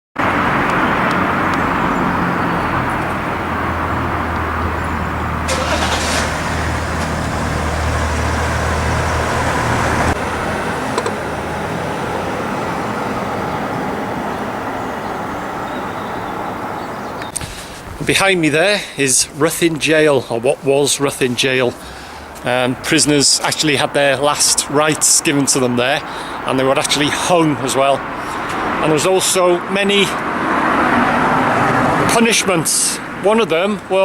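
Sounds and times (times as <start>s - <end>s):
vehicle engine humming: 0.2s - 19.1s
traffic noise: 0.2s - 34.0s.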